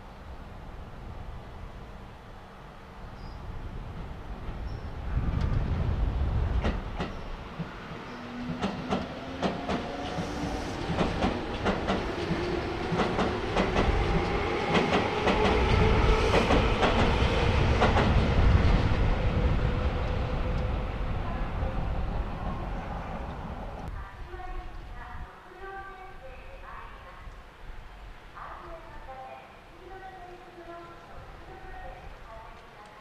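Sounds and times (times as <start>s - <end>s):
train wheels clicking over rail joints: 6.4s - 23.9s.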